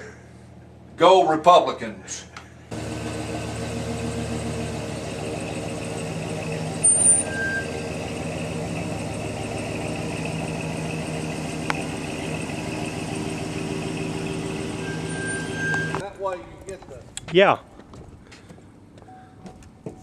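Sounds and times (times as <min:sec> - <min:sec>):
engine running steadily: 0:02.7 - 0:16.0
short beep: 0:06.8 - 0:07.8.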